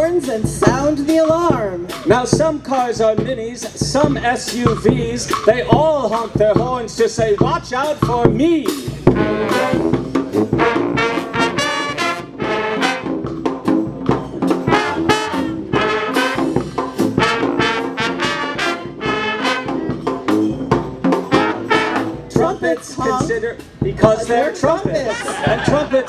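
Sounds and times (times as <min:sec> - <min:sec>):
brass band playing: 0:00.0 - 0:25.9.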